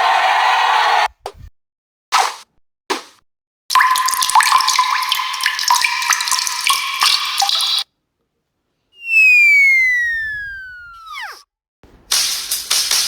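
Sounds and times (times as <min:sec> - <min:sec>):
water running and bubbling: 0:03.7 - 0:07.8.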